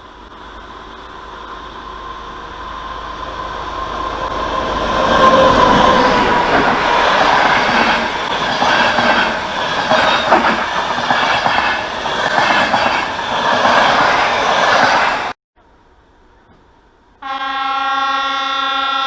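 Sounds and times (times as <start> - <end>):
train wheels clattering on rails: 4.2 - 15.3.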